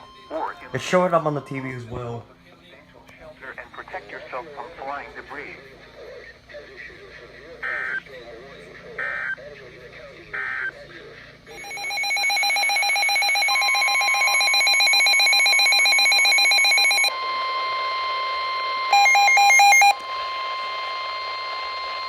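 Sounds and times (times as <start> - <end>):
steady warning tone: 3.7 - 22.0
rapid electronic pulsing beeps: 6.2 - 22.0.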